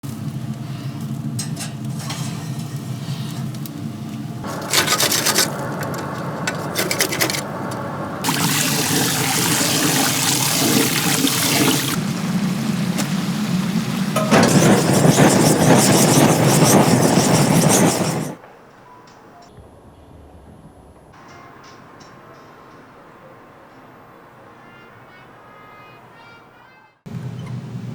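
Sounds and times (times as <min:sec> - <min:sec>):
handling and scraping chicken: 0:04.4 - 0:07.5, 0:14.2 - 0:18.4
steady loud hiss: 0:08.1 - 0:19.3.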